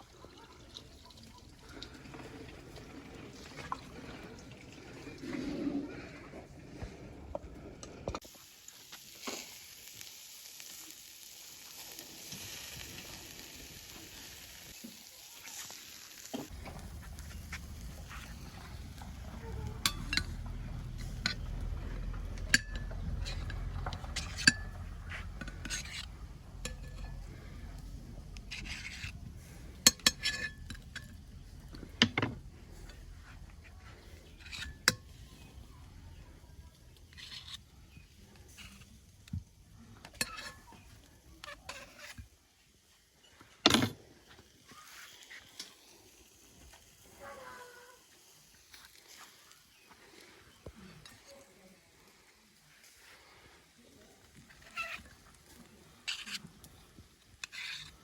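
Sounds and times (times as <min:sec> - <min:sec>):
meat sizzling: 0:08.2 - 0:43.2, 0:44.2 - 0:58.0
kitchen utensils clinking and scraping: 0:11.7 - 0:38.9, 0:39.9 - 0:42.3, 0:54.3 - 0:58.0
low rumble: 0:16.5 - 0:28.5.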